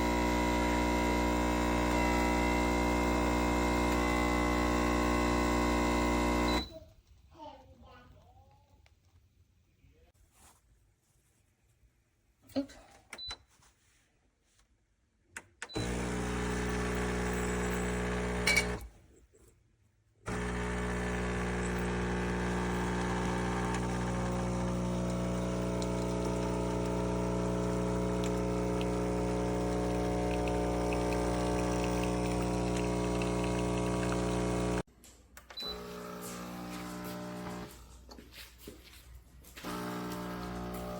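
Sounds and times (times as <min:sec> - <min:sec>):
espresso machine pump humming: 0:00.0 - 0:06.7, 0:15.8 - 0:18.9, 0:20.3 - 0:34.9, 0:35.6 - 0:37.8, 0:39.6 - 0:40.9
liquid pouring: 0:20.3 - 0:34.8.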